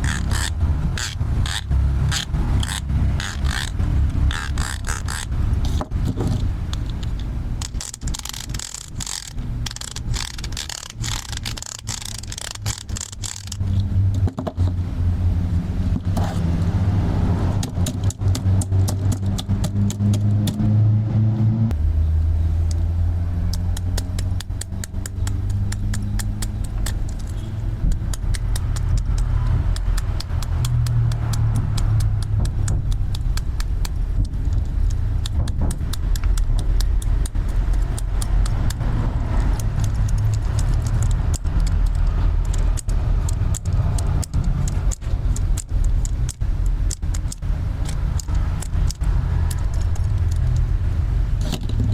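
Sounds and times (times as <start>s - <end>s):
toy power tool buzzing: 0.0s - 5.3s, 7.6s - 13.6s
plastic toy tools clicking: 0.0s - 14.2s, 17.6s - 20.6s, 23.5s - 38.8s, 39.4s - 50.7s.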